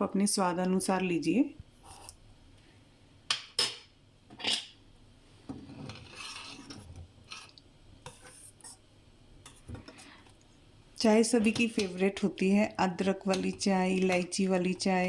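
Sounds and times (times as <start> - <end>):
spoon scraping and stirring: 1.8 - 2.2, 5.6 - 8.8, 9.4 - 10.4, 11.4 - 12.3, 12.9 - 15.0.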